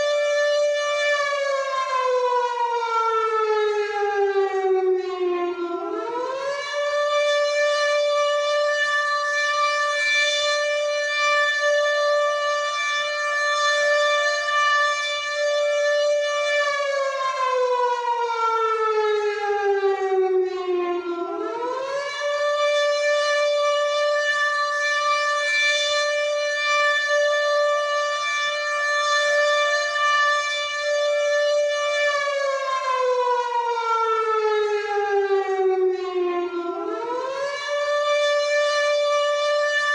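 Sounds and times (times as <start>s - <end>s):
air raid siren wailing: 0.0s - 39.9s.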